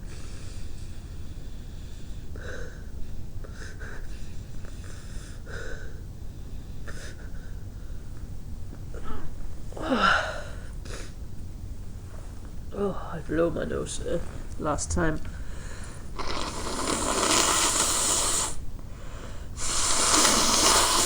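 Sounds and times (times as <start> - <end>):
person's catching breaths: 15.4 - 21.0.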